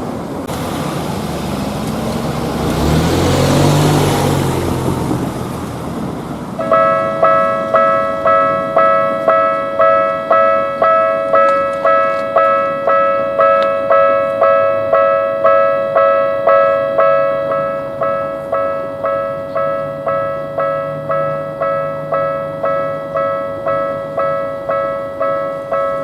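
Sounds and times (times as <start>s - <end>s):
level crossing bell ringing: 6.6s - 26.0s.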